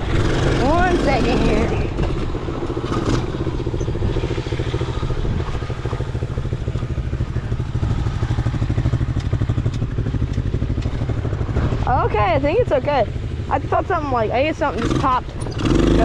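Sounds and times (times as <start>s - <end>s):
atv engine running: 0.0s - 16.0s.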